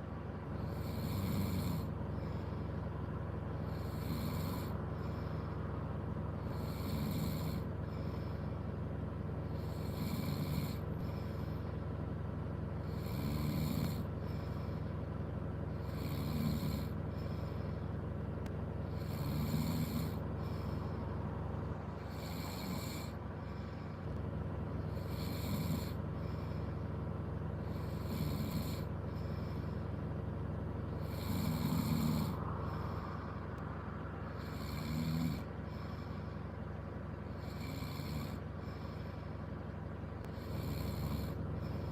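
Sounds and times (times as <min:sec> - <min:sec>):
low hum inside a car: 0:00.0 - 0:41.9
person snoring: 0:00.6 - 0:02.4, 0:03.7 - 0:05.4, 0:06.5 - 0:08.2, 0:09.6 - 0:11.4, 0:12.8 - 0:14.1, 0:15.8 - 0:17.0, 0:19.0 - 0:20.8, 0:22.0 - 0:23.6, 0:24.9 - 0:26.4, 0:27.6 - 0:29.6, 0:31.0 - 0:33.2, 0:34.3 - 0:36.2, 0:37.3 - 0:39.2, 0:40.3 - 0:41.9.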